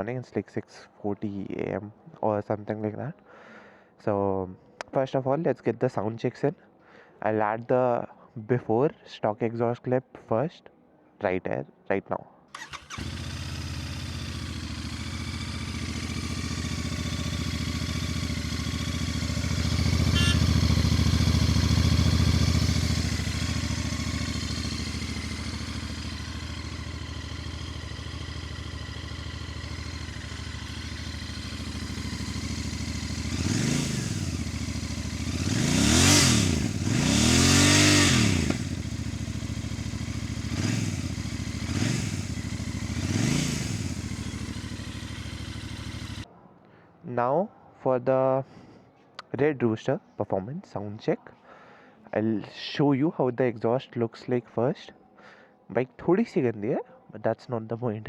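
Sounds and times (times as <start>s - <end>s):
motorcycle engine idling and revving: 12.6s - 46.3s.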